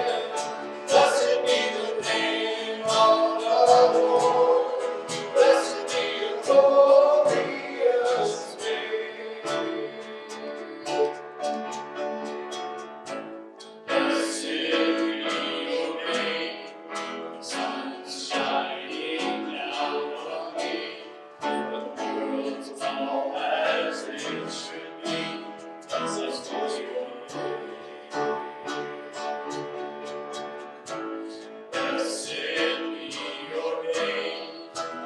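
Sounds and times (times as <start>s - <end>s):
people singing: 0.0s - 12.7s, 13.8s - 35.0s
guitar strummed rhythmically: 0.0s - 35.0s.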